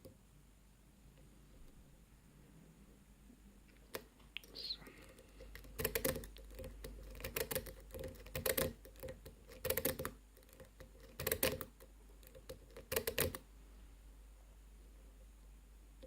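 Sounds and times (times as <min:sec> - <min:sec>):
lock pick clicking and scraping: 0:05.5 - 0:13.4.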